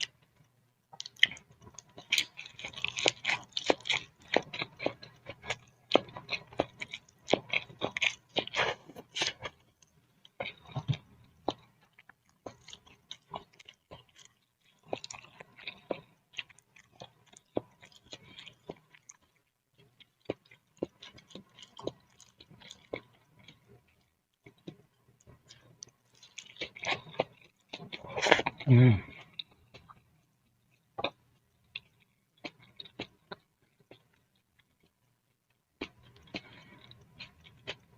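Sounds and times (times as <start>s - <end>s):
wet chewing mouth clicks: 0.9s - 9.6s.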